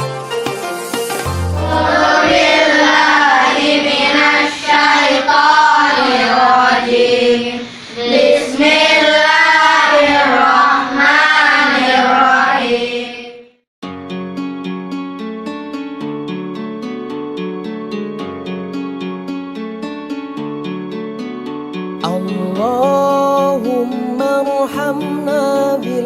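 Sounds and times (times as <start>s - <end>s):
voices singing over music: 1.4s - 13.3s.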